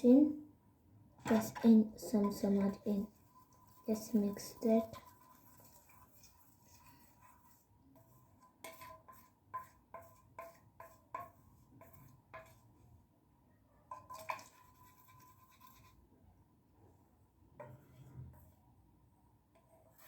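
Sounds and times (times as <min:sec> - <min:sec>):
stirrer tapping and scraping container: 0:01.2 - 0:12.8, 0:13.9 - 0:16.0.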